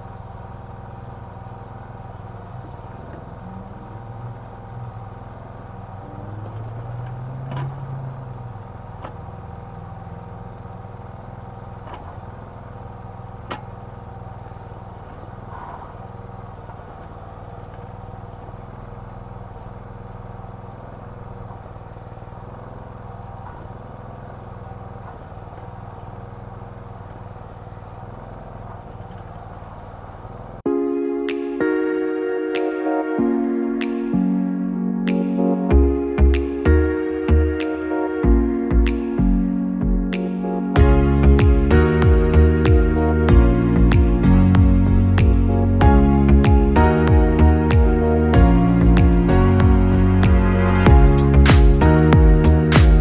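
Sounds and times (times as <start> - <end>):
small gasoline engine running: 0.0 - 30.6.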